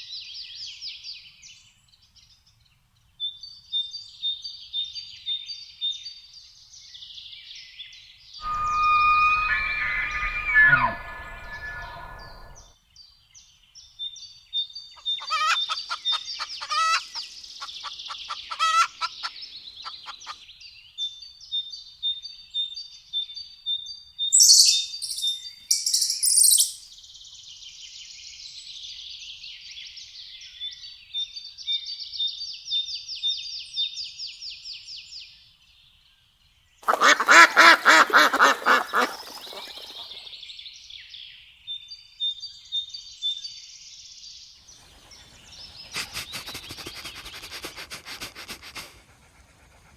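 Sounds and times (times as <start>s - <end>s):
birds chirping: 8.4s - 12.6s, 24.4s - 26.8s, 36.8s - 40.3s
quick repeated bird calls: 8.4s - 12.6s, 24.4s - 26.8s, 36.8s - 40.2s
rapid lower bird calls: 8.4s - 12.6s, 24.4s - 26.8s, 36.8s - 40.2s, 44.8s - 49.6s
sharp very high bird calls: 8.4s - 12.6s, 24.4s - 26.8s, 36.8s - 40.2s.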